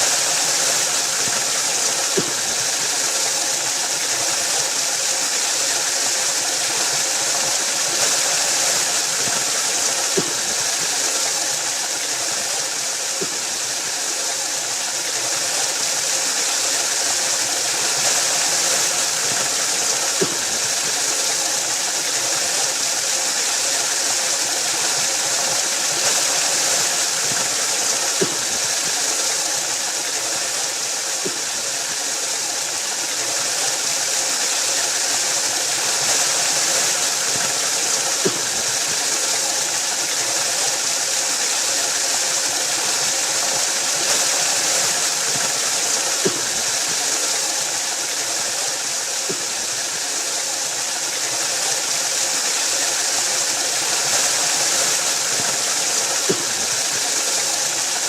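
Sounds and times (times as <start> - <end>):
waterfall rushing: 0.0 - 58.0
water splashing ticks: 14.8 - 58.0.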